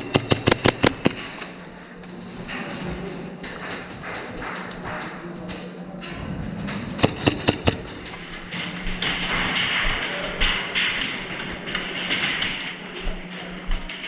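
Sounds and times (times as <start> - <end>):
airsoft gunfire cracks: 0.0 - 1.4, 7.0 - 8.6
scattered taps: 0.0 - 1.5, 7.0 - 14.0
steady low hum: 5.2 - 14.0.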